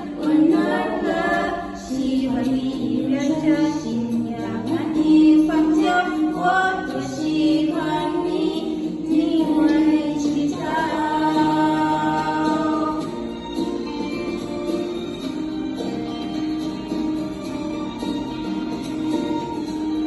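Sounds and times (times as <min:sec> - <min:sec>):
voices singing a song: 0:00.0 - 0:13.2.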